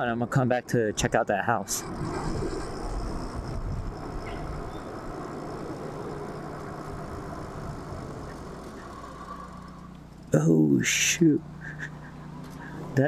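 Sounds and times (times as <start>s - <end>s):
wind and tyre noise: 0.0s - 10.3s
faint vehicle engine humming: 0.0s - 13.0s.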